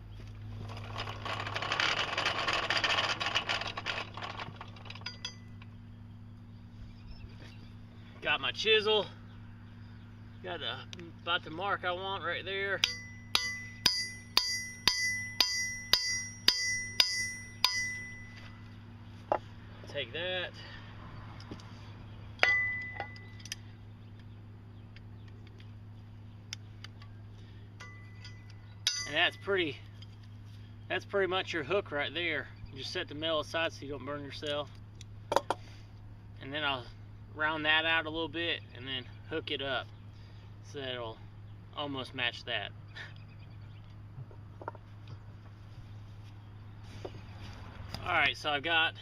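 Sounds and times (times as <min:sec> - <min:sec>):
steady low hum: 0:00.0 - 0:49.0
light metallic ring: 0:04.9 - 0:05.7, 0:12.8 - 0:18.8, 0:22.4 - 0:23.7, 0:27.8 - 0:30.2
steel clinking on anvil: 0:12.8 - 0:18.4, 0:22.4 - 0:23.5, 0:27.8 - 0:29.4.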